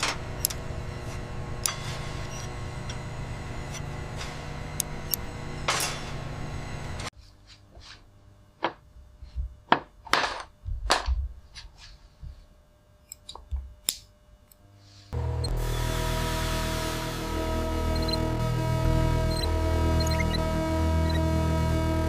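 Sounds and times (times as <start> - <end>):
steady machine noise: 0.0 - 7.1, 15.2 - 22.0.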